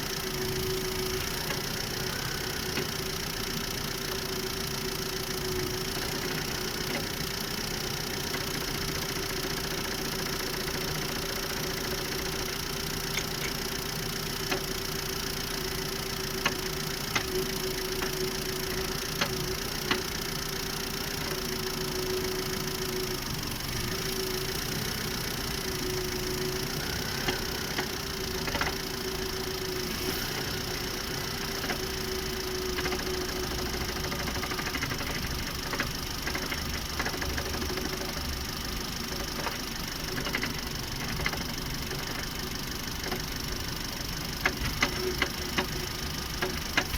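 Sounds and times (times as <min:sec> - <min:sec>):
car engine running: 0:00.0 - 0:46.9
sharp drivetrain knocks: 0:43.0 - 0:46.9.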